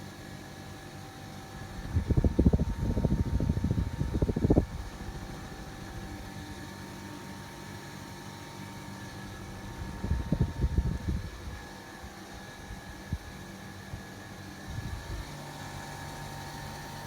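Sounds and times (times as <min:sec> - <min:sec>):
ceiling fan humming: 0:00.0 - 0:17.0
wind buffeting microphone: 0:01.6 - 0:06.7, 0:09.3 - 0:11.7, 0:14.6 - 0:15.3.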